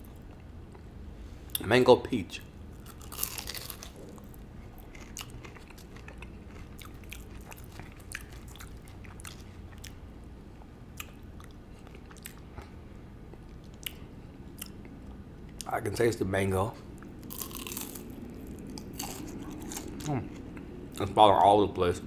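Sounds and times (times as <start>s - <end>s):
chewing crunches: 2.7s - 10.0s, 10.9s - 15.7s, 17.0s - 21.1s.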